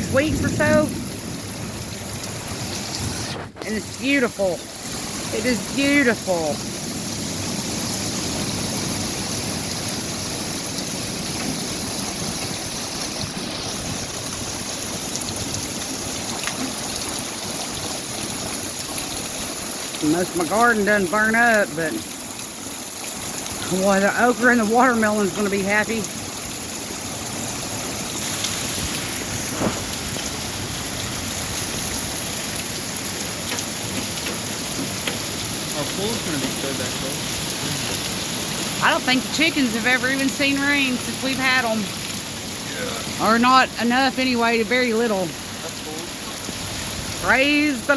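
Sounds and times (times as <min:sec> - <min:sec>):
heavy rain pouring: 0:00.0 - 0:47.9.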